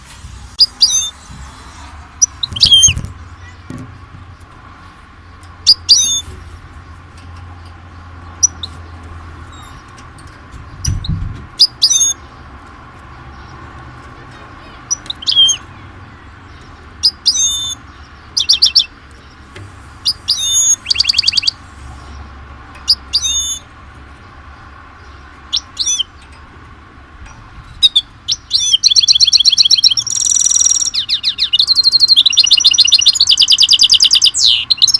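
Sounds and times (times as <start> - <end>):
bird trills: 0.6 - 3.7, 5.6 - 6.3, 8.3 - 8.9, 10.8 - 12.3, 14.6 - 19.4, 20.0 - 23.7, 25.0 - 26.5, 27.3 - 34.9
small bird chirping: 0.6 - 4.5, 5.2 - 10.0, 10.6 - 26.6, 27.2 - 34.9.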